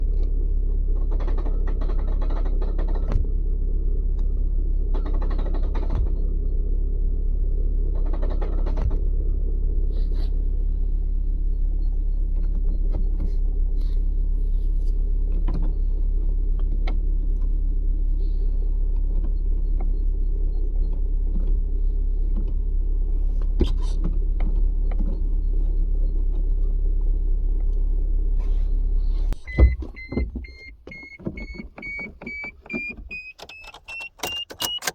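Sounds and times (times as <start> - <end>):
car engine idling: 26.9 - 34.9
gearbox rattle: 29.4 - 34.9.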